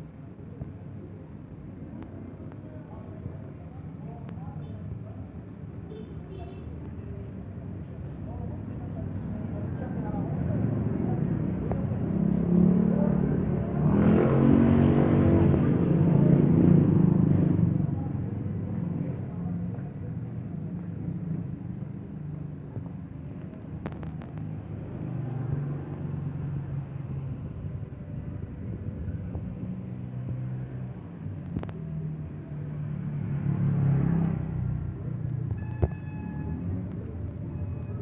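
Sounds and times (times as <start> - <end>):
low traffic rumble: 0.0 - 38.0
vehicle engine passing close: 10.2 - 19.2, 23.8 - 35.5.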